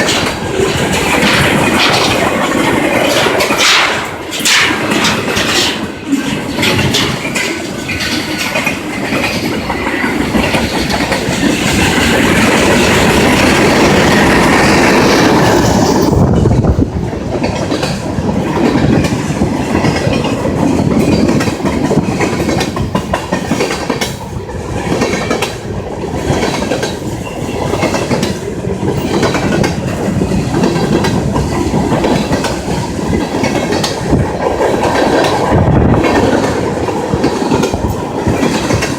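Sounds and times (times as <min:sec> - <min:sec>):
freight train wheels clacking: 0:00.0 - 0:38.9.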